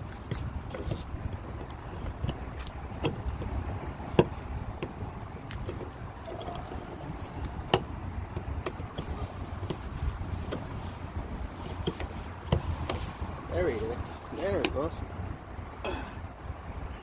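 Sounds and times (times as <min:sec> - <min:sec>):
steady low rumble: 0:00.0 - 0:17.0
car door handle clicks: 0:01.6 - 0:06.8, 0:07.4 - 0:09.9, 0:10.5 - 0:10.7.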